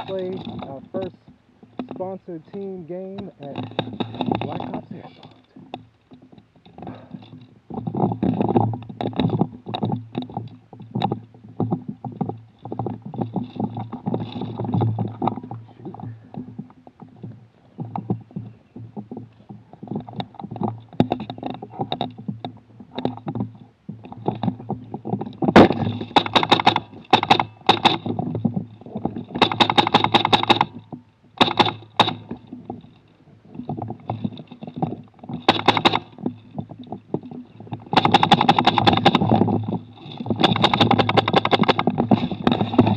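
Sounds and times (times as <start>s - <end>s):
knocking and rubbing of rifle: 0.0s - 42.9s.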